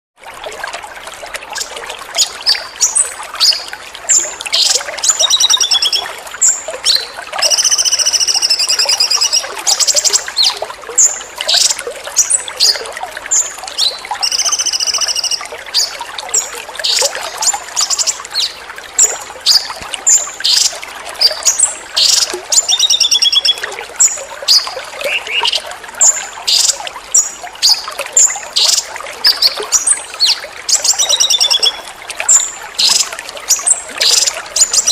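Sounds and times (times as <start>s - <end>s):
trickling water: 0.2s - 34.9s
songbird singing and trilling: 2.5s - 34.9s.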